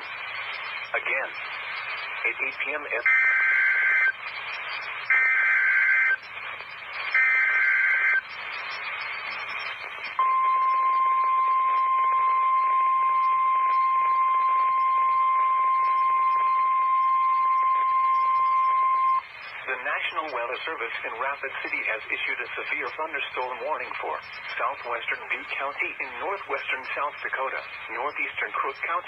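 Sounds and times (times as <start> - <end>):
radio hiss: 0.0 - 10.8, 17.7 - 29.0.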